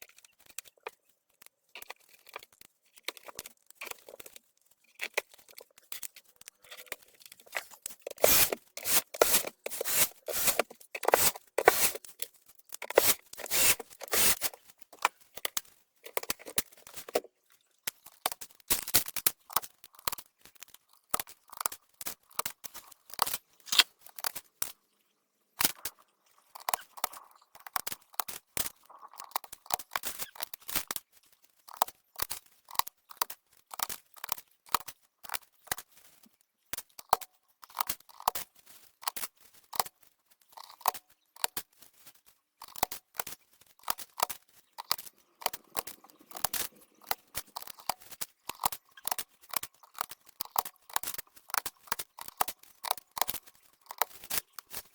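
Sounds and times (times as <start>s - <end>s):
plastic keyboard keys clicking: 5.0s - 17.3s, 31.7s - 35.4s, 42.6s - 54.7s.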